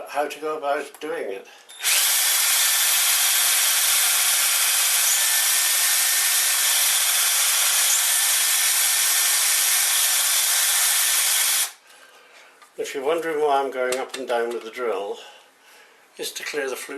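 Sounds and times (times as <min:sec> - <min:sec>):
electric drill boring wood: 0:01.8 - 0:11.8.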